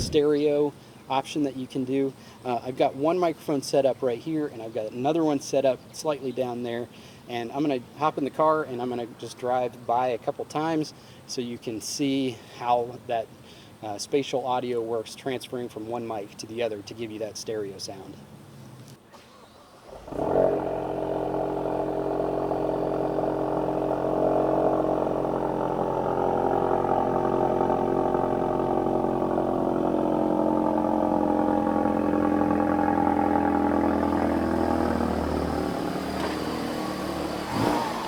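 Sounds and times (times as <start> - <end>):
car engine starting and running: 0.0 - 0.5, 18.3 - 38.0.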